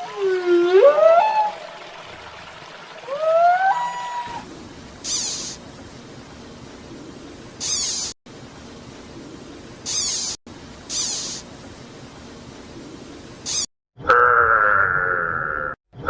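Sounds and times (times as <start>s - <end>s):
steady background hiss: 4.4s - 13.6s
animal hissing bursts: 5.0s - 5.6s, 7.6s - 8.2s, 9.9s - 11.5s.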